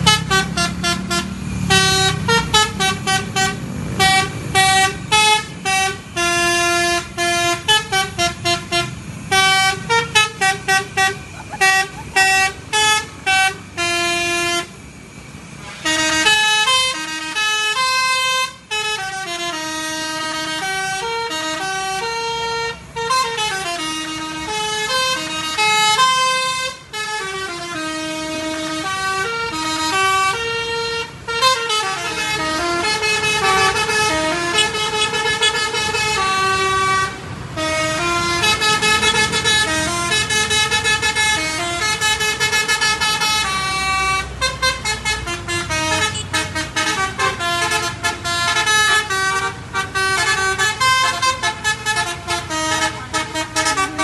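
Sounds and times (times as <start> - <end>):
musical bus horns playing tunes: 0.0 - 54.0.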